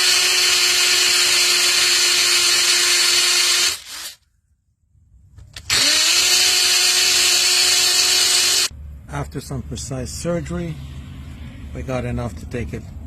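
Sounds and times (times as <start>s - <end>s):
electric drill boring into concrete: 0.0s - 4.2s, 5.6s - 8.7s.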